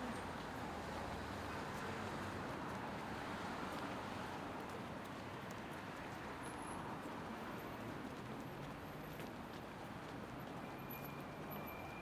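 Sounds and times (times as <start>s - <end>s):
traffic: 0.0s - 4.6s.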